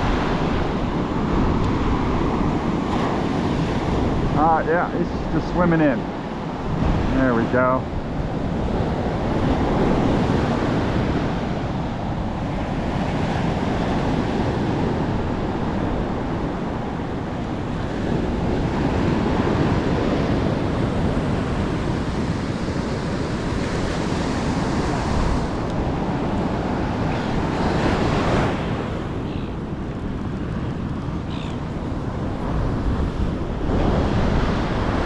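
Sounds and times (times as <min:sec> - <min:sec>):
ocean surf breaking: 0:00.0 - 0:35.0
wind buffeting microphone: 0:00.0 - 0:35.0.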